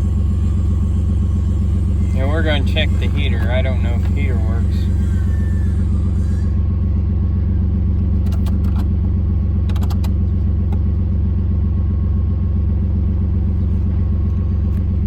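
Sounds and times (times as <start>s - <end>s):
car engine idling: 0.0s - 15.0s
quick clicks: 9.7s - 10.2s.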